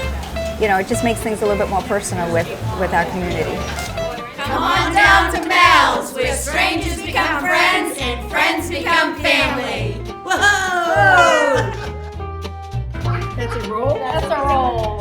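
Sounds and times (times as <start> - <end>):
person singing: 9.4 - 12.0.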